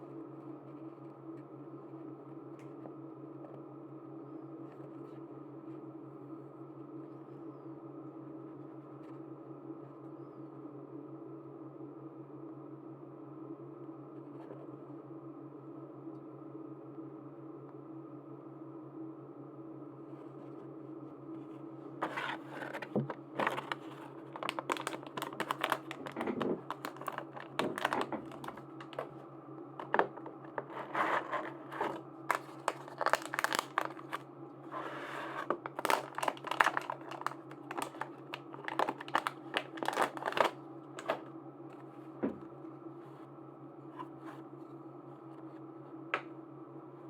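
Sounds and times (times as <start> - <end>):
plastic packaging crinkling: 22.0 - 29.2, 29.8 - 41.3.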